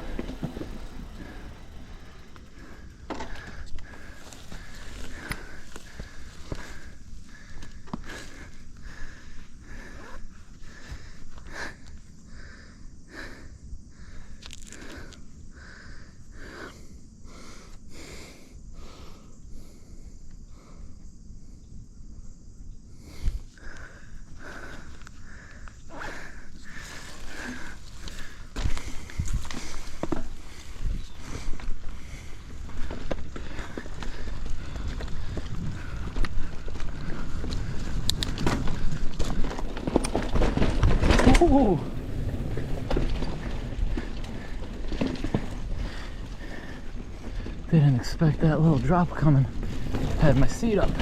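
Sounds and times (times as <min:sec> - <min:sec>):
low rumble of bike ride: 0:00.0 - 0:51.0
person breathing hard: 0:01.0 - 0:21.2, 0:22.9 - 0:38.0, 0:43.9 - 0:47.7.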